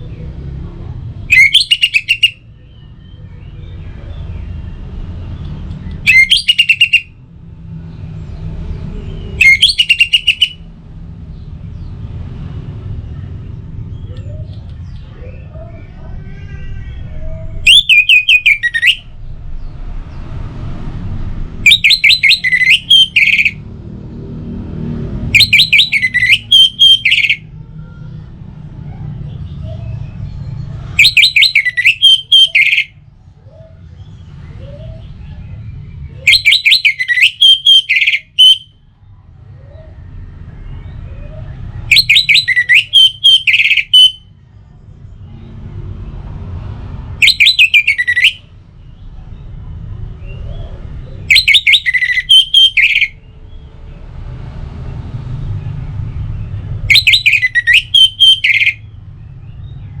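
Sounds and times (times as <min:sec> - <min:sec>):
thrush singing: 0:01.2 - 0:02.7, 0:05.9 - 0:07.2, 0:09.3 - 0:10.7, 0:16.9 - 0:19.2, 0:21.6 - 0:23.6, 0:25.2 - 0:28.4, 0:31.0 - 0:33.0, 0:36.2 - 0:38.8, 0:41.9 - 0:44.2, 0:47.2 - 0:48.5, 0:51.2 - 0:53.3, 0:56.9 - 0:58.9.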